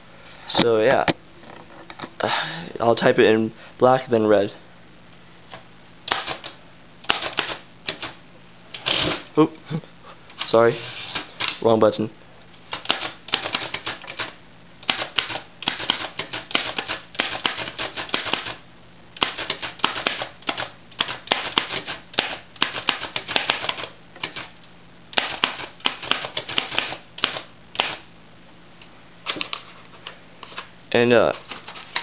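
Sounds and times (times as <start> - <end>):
manual typewriter typing: 12.7 - 18.6.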